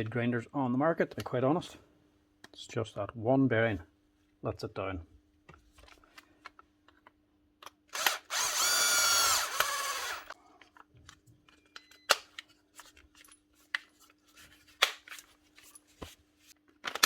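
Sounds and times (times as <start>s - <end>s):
angle grinder whining: 8.0s - 10.4s.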